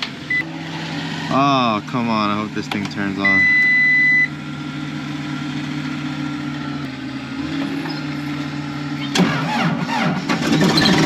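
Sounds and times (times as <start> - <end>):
engine starting: 9.0 - 11.0.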